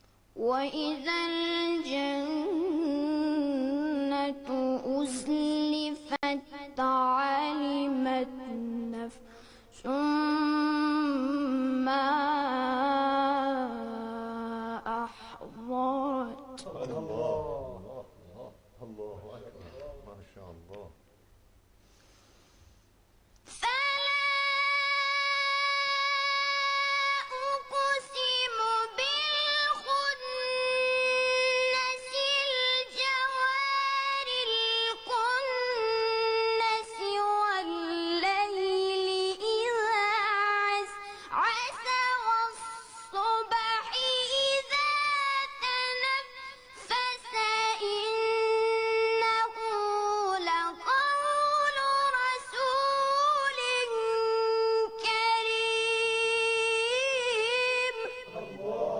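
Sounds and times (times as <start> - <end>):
solo voice chanting recitation: 0.4 - 21.0, 23.5 - 58.9
person breathing: 9.2 - 9.7, 21.8 - 23.0.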